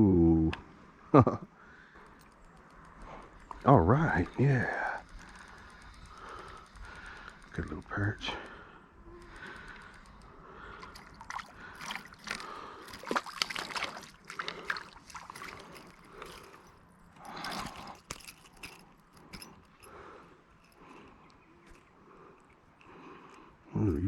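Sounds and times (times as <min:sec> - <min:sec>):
water splashing and sloshing: 0:09.3 - 0:23.4.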